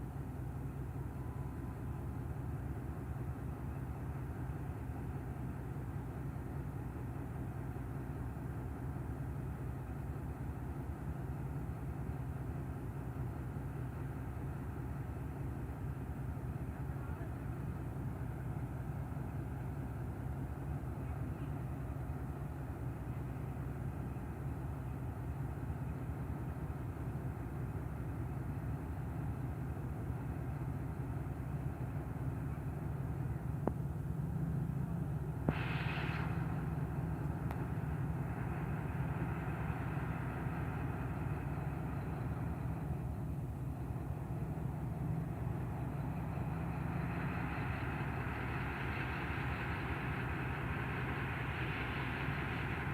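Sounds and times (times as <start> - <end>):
locomotive engine chugging drone: 0.0 - 52.9
brief hiss: 35.4 - 37.8.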